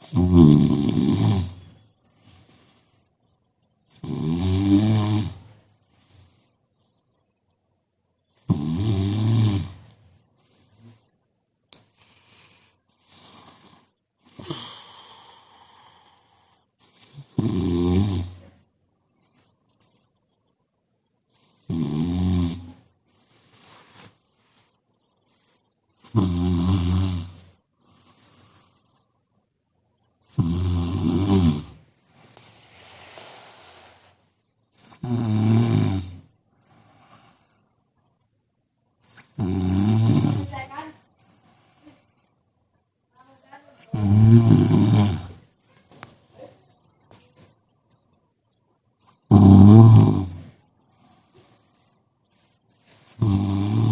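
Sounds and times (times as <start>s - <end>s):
person snoring: 0.0s - 1.6s, 4.0s - 5.5s, 8.4s - 9.8s, 12.0s - 18.5s, 21.4s - 22.8s, 26.1s - 27.4s, 30.3s - 31.8s, 32.4s - 34.2s, 34.8s - 36.3s, 39.1s - 40.6s, 43.9s - 45.5s, 49.3s - 50.6s, 53.1s - 53.9s
soft breathing: 1.6s - 3.9s, 5.4s - 8.5s, 9.8s - 17.3s, 18.4s - 21.7s, 22.8s - 26.2s, 27.4s - 30.3s, 31.8s - 35.0s, 36.2s - 39.4s, 40.4s - 42.8s, 50.5s - 53.2s.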